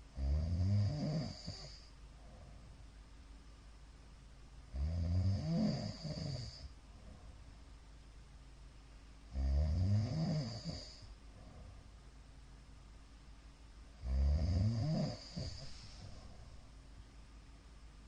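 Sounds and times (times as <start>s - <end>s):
man snoring loudly: 0.2s - 1.9s, 4.8s - 6.7s, 9.3s - 11.0s, 14.0s - 15.8s.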